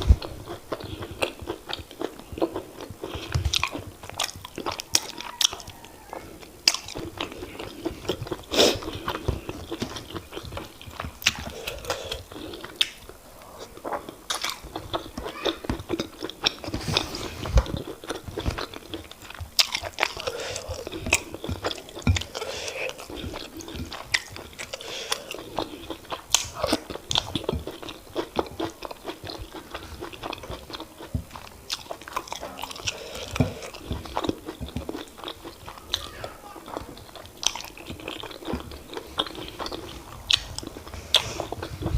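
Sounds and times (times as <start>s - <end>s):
person chewing and swallowing: 0.0s - 41.9s
wet mouth smacks: 12.8s - 13.0s, 26.3s - 26.6s.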